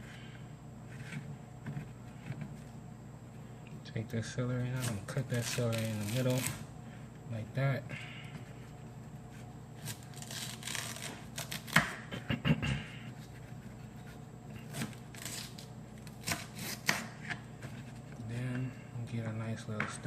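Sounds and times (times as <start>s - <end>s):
knife cutting celery on board: 13.2s - 17.8s.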